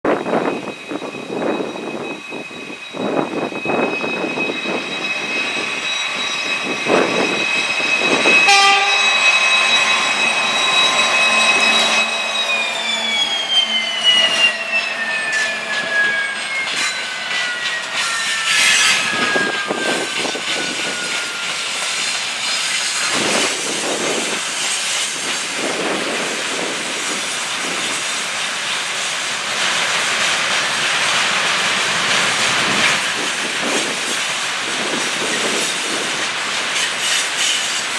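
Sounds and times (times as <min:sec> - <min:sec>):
locomotive high-pitched whine: 0:00.1 - 0:37.9
train rolling with knocks: 0:00.1 - 0:37.9.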